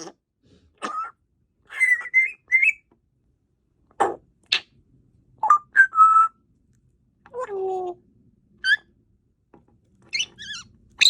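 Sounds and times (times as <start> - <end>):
parrot whistling and chirping: 1.7 - 2.9, 5.4 - 6.4, 8.6 - 8.9, 10.1 - 10.7.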